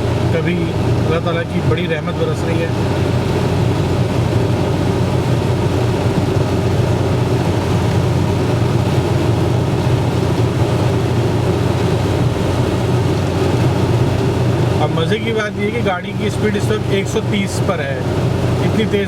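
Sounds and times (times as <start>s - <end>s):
rain against car: 0.0s - 19.0s
tyres on wet road: 0.0s - 19.0s
wind against car: 2.6s - 14.8s.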